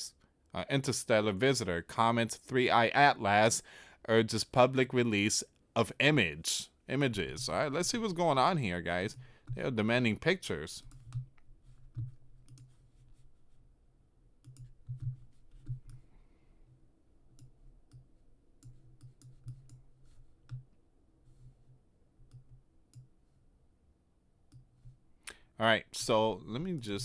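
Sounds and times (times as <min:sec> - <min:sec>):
computer mouse clicking: 0:10.8 - 0:13.3, 0:14.4 - 0:16.0, 0:17.3 - 0:20.7, 0:22.2 - 0:23.1.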